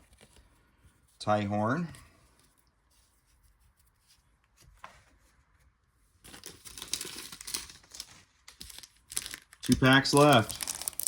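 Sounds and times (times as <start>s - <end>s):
wrapper crinkling and tearing: 6.2s - 11.0s.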